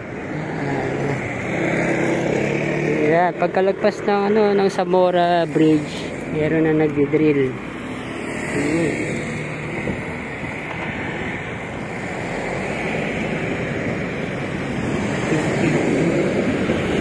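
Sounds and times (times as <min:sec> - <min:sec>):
wind on microphone: 0:09.1 - 0:17.0.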